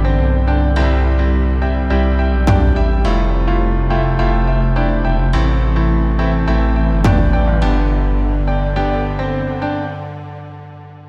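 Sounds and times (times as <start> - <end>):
held bass note: 2.5 - 3.9, 7.0 - 8.8.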